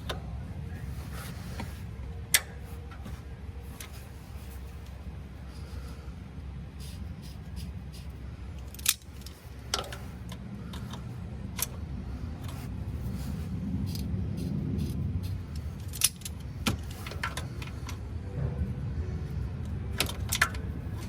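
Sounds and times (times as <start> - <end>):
low rumble: 10.5 - 21.0.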